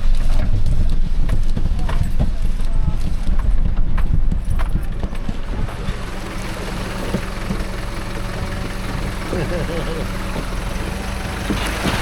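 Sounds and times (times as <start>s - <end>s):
tyres knocking over rocks: 0.0s - 9.5s, 10.1s - 12.0s
diesel truck engine pulling: 0.0s - 12.0s
water rushing and splashing: 5.5s - 12.0s.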